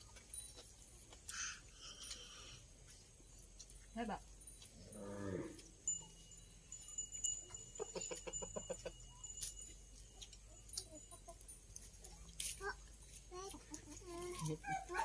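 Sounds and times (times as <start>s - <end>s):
chicken clucking: 7.5s - 9.5s.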